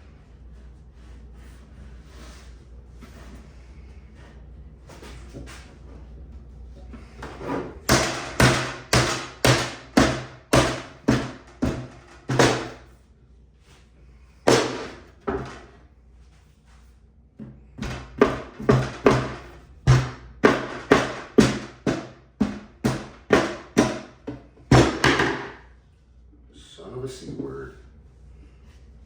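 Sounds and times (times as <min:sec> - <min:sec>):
hammer knocking on wood: 0:07.9 - 0:12.8, 0:17.8 - 0:25.6.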